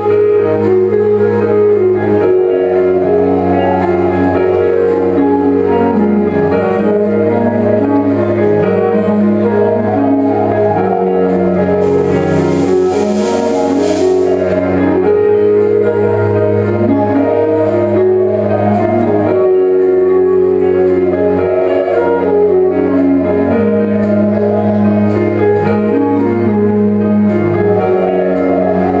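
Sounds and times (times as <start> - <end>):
bright hissing swell: 11.8 - 14.6.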